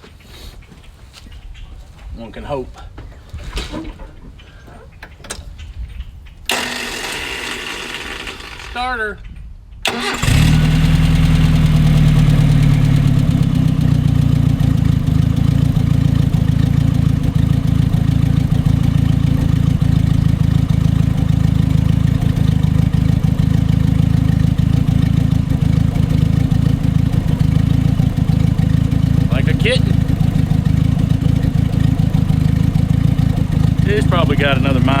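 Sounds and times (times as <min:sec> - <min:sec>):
car engine idling: 0:06.5 - 0:08.9, 0:09.8 - 0:35.0.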